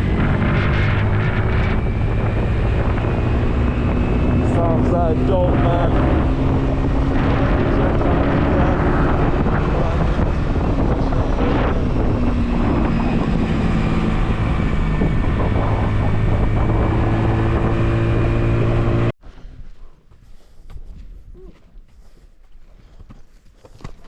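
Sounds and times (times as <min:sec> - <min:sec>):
vehicle engine running: 0:00.0 - 0:19.2
wind buffeting microphone: 0:00.0 - 0:19.7.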